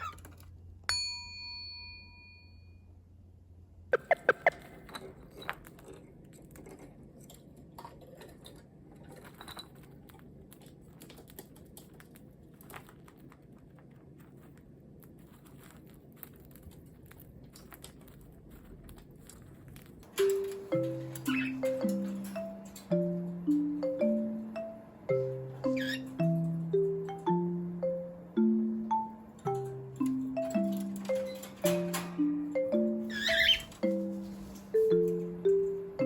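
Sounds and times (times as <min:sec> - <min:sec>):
bird beak nibbling and chewing: 0:04.0 - 0:22.7.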